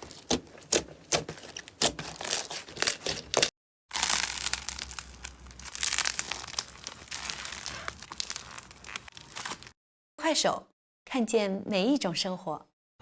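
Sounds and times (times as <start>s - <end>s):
slime crackling and popping: 1.8s - 9.7s.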